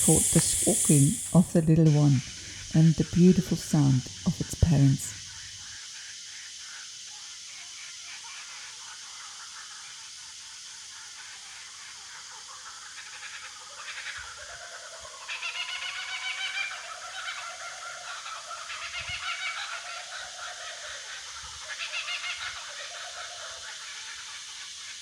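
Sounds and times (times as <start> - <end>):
kookaburras calling: 0.0 - 5.5, 10.9 - 25.0
steady high hiss: 0.0 - 25.0.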